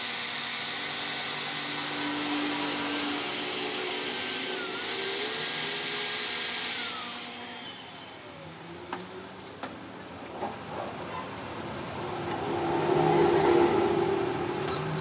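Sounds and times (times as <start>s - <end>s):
power tool whining: 0.0s - 10.1s.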